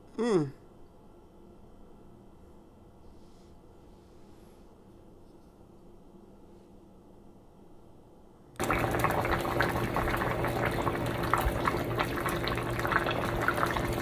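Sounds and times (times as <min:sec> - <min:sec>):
soup boiling and bubbling: 0:08.6 - 0:14.0.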